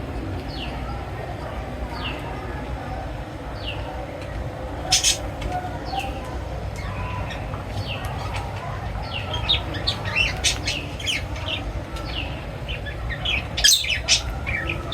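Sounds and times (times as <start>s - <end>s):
small birds chirping: 4.8s - 14.9s.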